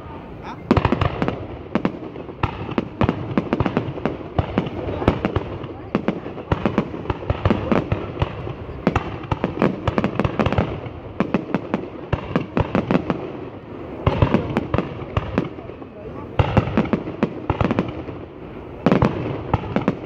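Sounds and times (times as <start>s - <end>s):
fireworks bangs and crackles: 0.0s - 20.0s.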